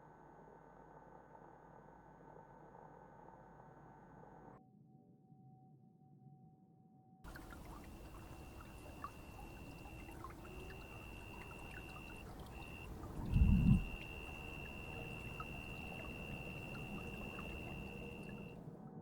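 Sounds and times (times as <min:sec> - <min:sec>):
steady rain: 0:07.3 - 0:18.5
faint high-pitched whine: 0:07.3 - 0:18.6.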